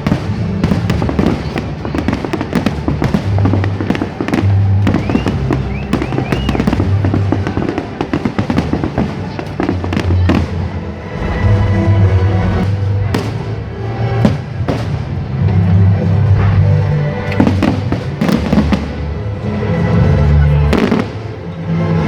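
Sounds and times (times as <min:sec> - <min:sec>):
fireworks bangs and crackling: 0:00.0 - 0:22.0
firework whistles: 0:04.3 - 0:07.0.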